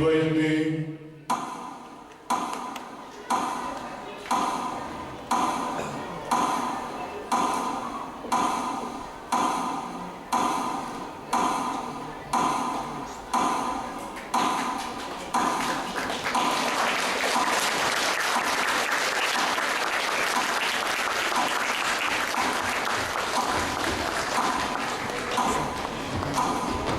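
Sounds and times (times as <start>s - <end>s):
audience applause: 15.0s - 26.9s.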